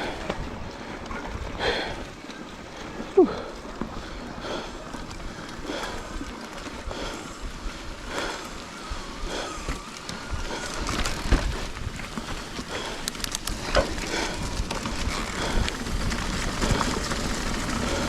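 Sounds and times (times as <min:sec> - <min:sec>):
bike knocking and rattling: 0:00.0 - 0:18.0
bike tyres rolling over dirt: 0:00.0 - 0:18.0.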